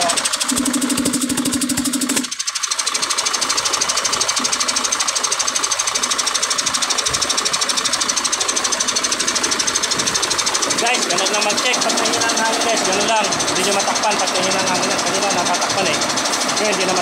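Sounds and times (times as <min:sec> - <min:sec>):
air compressor pumping: 0:00.0 - 0:17.0
diesel engine running: 0:00.0 - 0:17.0.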